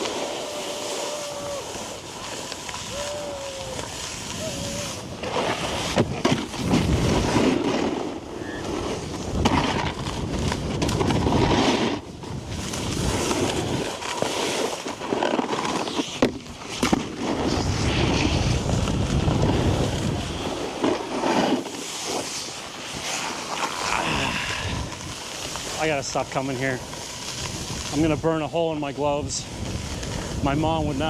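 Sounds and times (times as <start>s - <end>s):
snowboard scraping over snow: 0.0s - 31.0s
wind buffeting microphone: 1.2s - 7.4s, 17.4s - 20.6s, 29.0s - 31.0s.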